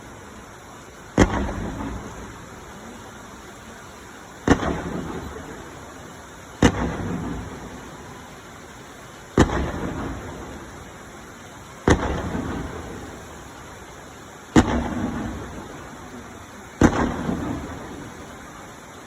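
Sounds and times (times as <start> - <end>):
firework shells booming: 1.1 - 2.9, 3.8 - 18.9
rumbling echo: 4.4 - 18.7.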